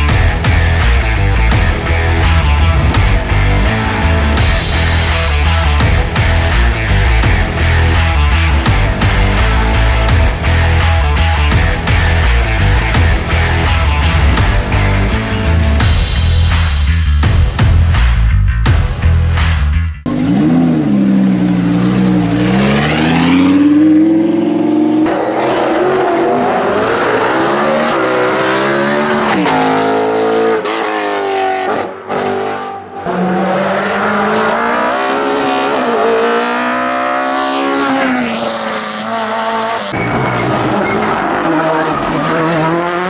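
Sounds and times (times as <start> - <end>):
race car engines revving: 0.0 - 16.7, 19.2 - 43.0
music track: 0.0 - 19.9.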